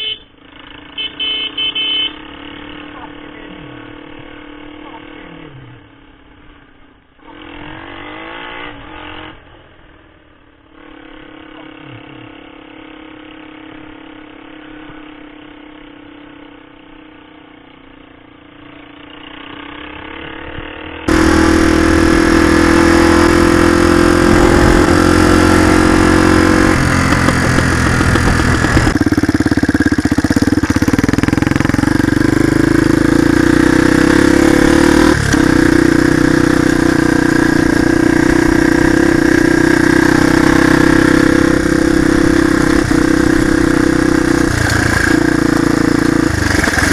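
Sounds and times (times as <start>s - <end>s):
small motorcycle engine running: 10.8s - 46.9s.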